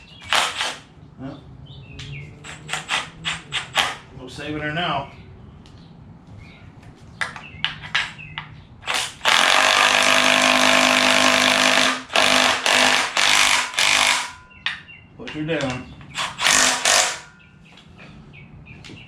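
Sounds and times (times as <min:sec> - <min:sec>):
handheld power tool running: 0:08.9 - 0:14.4, 0:16.2 - 0:17.2.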